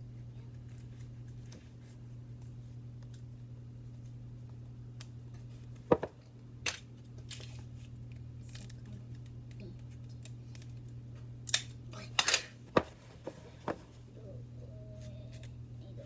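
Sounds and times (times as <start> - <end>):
low hum: 13.4 - 16.0.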